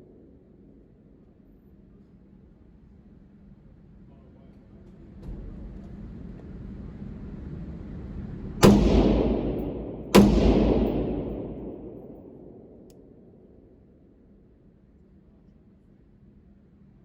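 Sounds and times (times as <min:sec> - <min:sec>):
rifle shots echoing: 0:08.6 - 0:13.2.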